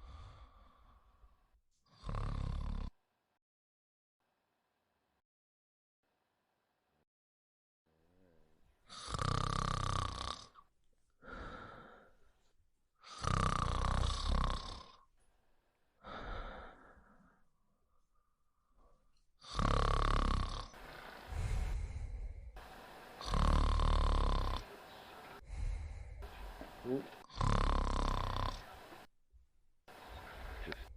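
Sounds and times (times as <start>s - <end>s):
woman snoring: 1.9s - 3.0s, 8.1s - 12.0s, 13.0s - 15.1s, 19.4s - 29.1s
soft breaths: 10.5s - 13.4s, 14.2s - 19.7s, 20.5s - 29.1s, 29.9s - 30.9s.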